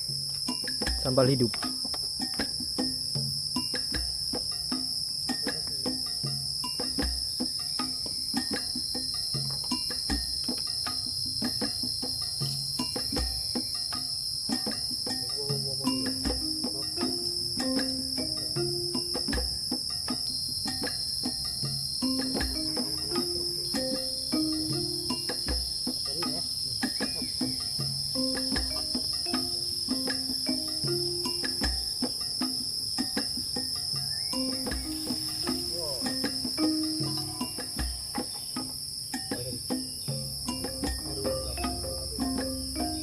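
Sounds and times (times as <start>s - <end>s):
insects buzzing: 0.0s - 43.0s
faint low notes: 40.7s - 43.0s.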